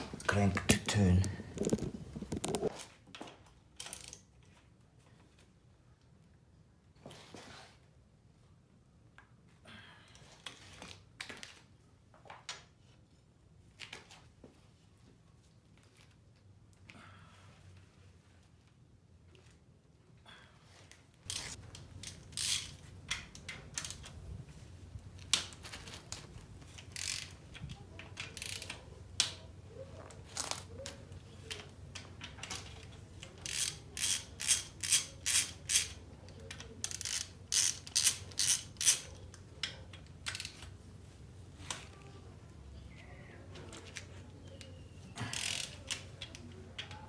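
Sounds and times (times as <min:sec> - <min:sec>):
ratchet wrench clicking: 0:21.3 - 0:24.0, 0:26.7 - 0:27.4, 0:28.2 - 0:29.4, 0:33.4 - 0:39.1, 0:45.3 - 0:46.2.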